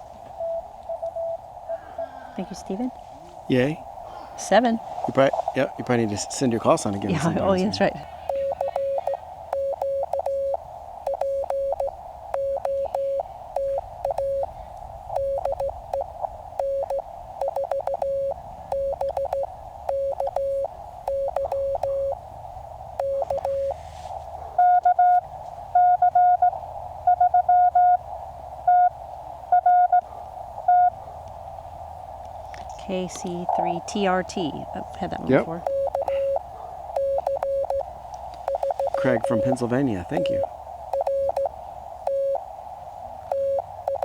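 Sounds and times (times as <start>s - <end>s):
receiver hiss: 0.0s - 44.0s
low-pitched morse code tones: 0.4s - 2.1s, 4.4s - 22.3s, 22.9s - 23.8s, 24.6s - 25.2s, 25.8s - 28.0s, 28.7s - 30.0s, 30.7s - 31.0s, 32.9s - 42.4s, 43.2s - 44.0s
high-pitched morse code tones: 7.1s - 14.5s, 15.1s - 22.2s, 23.0s - 23.8s, 24.6s - 25.2s, 30.7s - 30.9s, 35.5s - 36.4s, 37.0s - 37.8s, 38.4s - 41.5s, 42.1s - 42.4s, 43.3s - 44.0s.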